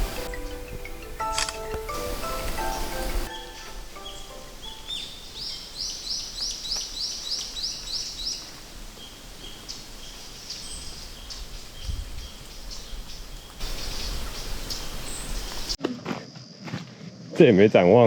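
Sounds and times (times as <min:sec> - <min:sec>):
bird repeating high note: 0:00.0 - 0:05.7
repeated lower bird note: 0:00.0 - 0:06.0
bird chirps: 0:00.0 - 0:15.8.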